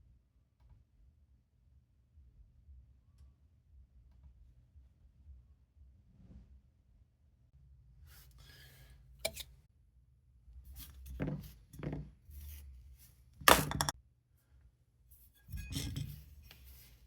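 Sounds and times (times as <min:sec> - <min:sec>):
plastic parts knocking and clicking: 0:13.4 - 0:13.9.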